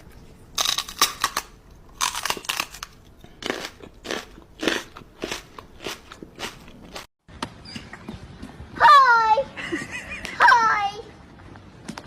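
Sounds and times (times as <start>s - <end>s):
crunchy food being chewed: 0.0s - 7.1s.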